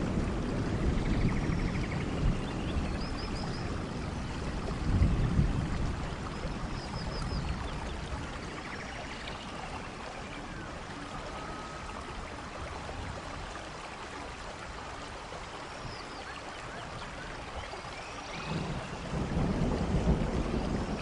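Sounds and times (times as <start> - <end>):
rain falling: 0.0 - 21.0.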